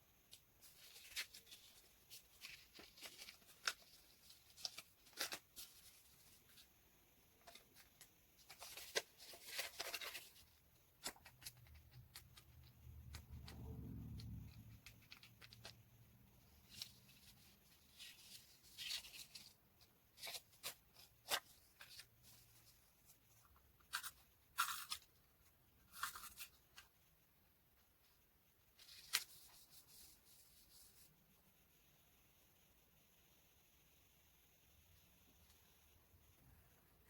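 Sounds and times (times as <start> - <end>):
paper rustling and crinkling: 0.3 - 6.7, 7.4 - 13.6, 14.2 - 27.0, 28.7 - 31.1.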